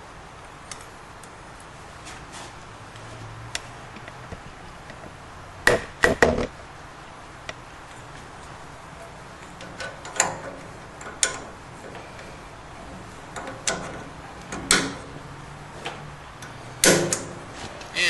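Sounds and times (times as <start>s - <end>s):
sharp clicks and knocks of hard parts: 2.9s - 6.6s, 9.2s - 18.0s.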